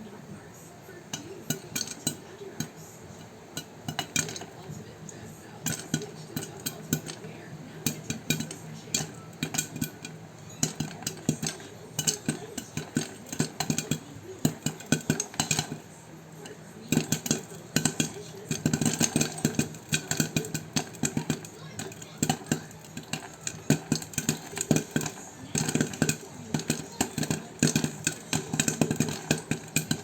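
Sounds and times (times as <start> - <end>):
popcorn popping in a pot: 0.0 - 30.0.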